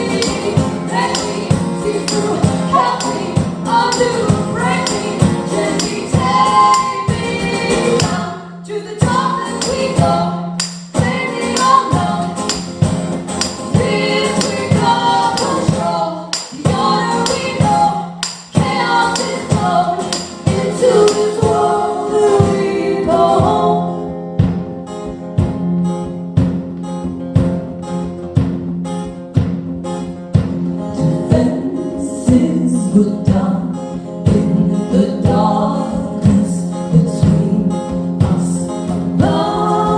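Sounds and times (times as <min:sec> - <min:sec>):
tambourine beat: 0:00.0 - 0:08.4, 0:09.0 - 0:22.6
voices singing in harmony: 0:00.0 - 0:12.7, 0:13.4 - 0:24.3, 0:38.2 - 0:39.9
guitar playing: 0:00.0 - 0:39.9.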